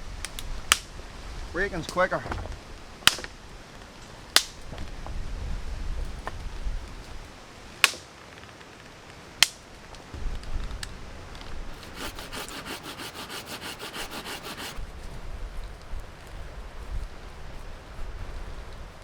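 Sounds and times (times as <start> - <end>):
wind rumble on microphone: 0.0 - 3.9, 4.5 - 7.7, 9.8 - 12.5, 14.8 - 19.0
branch cracking: 0.2 - 0.9, 1.8 - 4.9, 6.1 - 12.6
saw cutting branch: 11.8 - 14.8.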